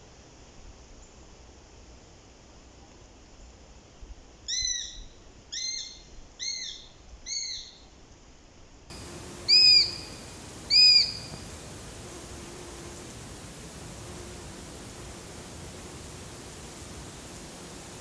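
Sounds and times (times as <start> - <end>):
hawk nasal call notes: 8.9 - 18.0.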